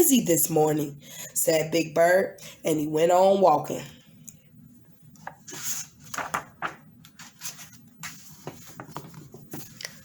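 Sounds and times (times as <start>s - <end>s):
book pages rustling: 5.2s - 10.0s
page being turned: 5.2s - 10.0s.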